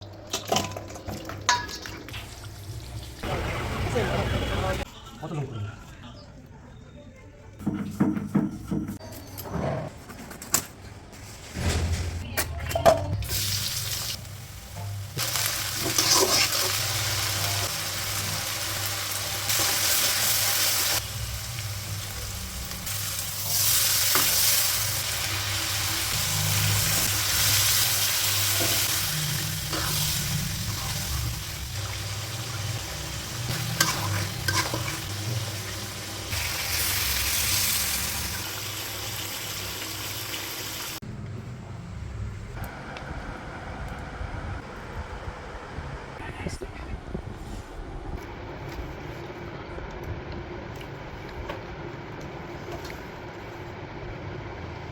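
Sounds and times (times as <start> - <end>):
meat sizzling in a pan: 13.3 - 41.0.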